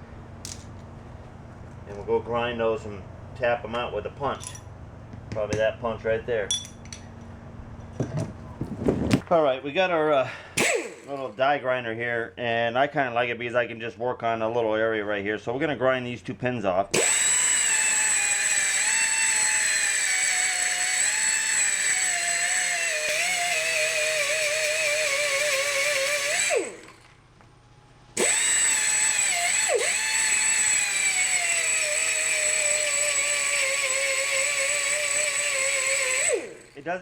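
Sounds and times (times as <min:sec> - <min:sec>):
die grinder grinding steel: 0:17.0 - 0:27.2, 0:28.2 - 0:37.0.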